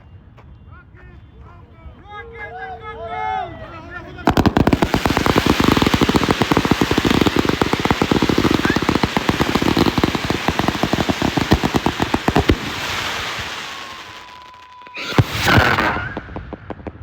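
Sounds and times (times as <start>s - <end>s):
firecrackers crackling: 4.3s - 17.0s.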